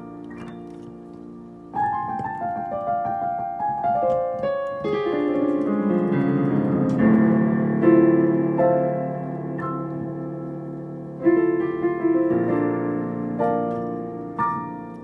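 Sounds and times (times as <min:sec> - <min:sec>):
piano playing: 0:00.0 - 0:15.0.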